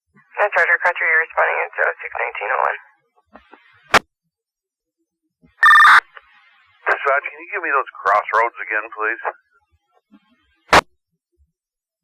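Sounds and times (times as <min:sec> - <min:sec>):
radio static click: 0:06.9 - 0:09.4.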